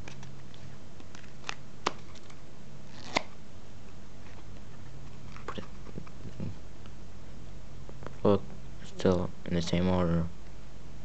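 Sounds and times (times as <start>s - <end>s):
playing cards being shuffled: 0.0s - 3.4s.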